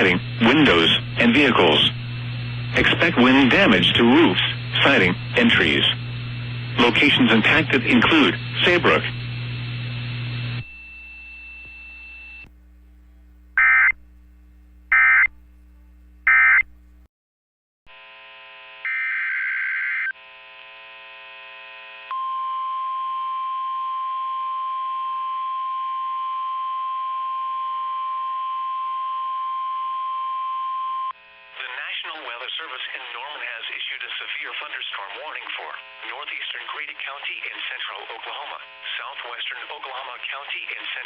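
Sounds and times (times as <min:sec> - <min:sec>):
faint hum: 0:00.0 - 0:17.1, 0:20.2 - 0:41.0
buzzing data bursts: 0:13.6 - 0:14.0.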